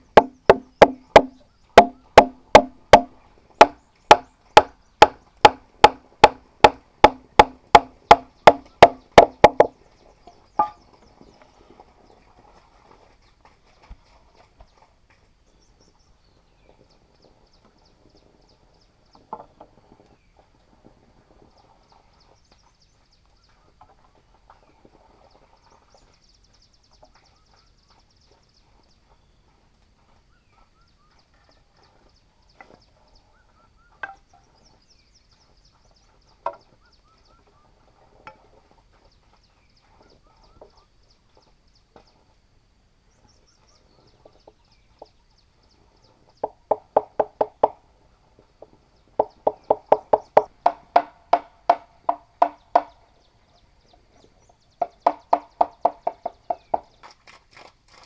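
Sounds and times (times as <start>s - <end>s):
tool knocking on bamboo: 0.0s - 9.8s, 10.6s - 10.8s, 34.0s - 34.4s, 36.4s - 36.7s, 46.4s - 47.8s, 49.1s - 53.0s, 54.8s - 57.2s.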